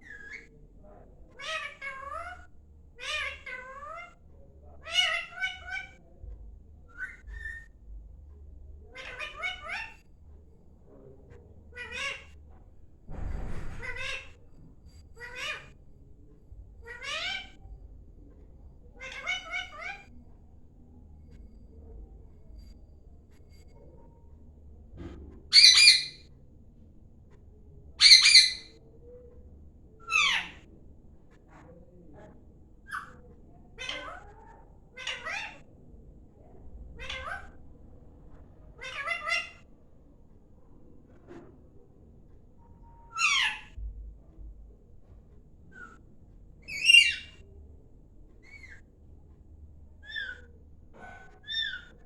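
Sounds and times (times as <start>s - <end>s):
parrot calling: 4.8s - 6.0s, 8.9s - 10.0s, 19.0s - 20.1s, 25.5s - 26.2s, 28.0s - 28.7s, 30.0s - 30.6s, 35.0s - 35.6s, 38.8s - 39.6s, 43.0s - 43.8s, 46.6s - 47.4s, 50.0s - 52.0s.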